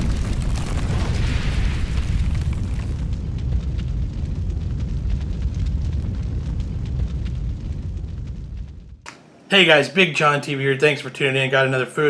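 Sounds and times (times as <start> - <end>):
deep rumble with crackle: 0.0 - 9.1.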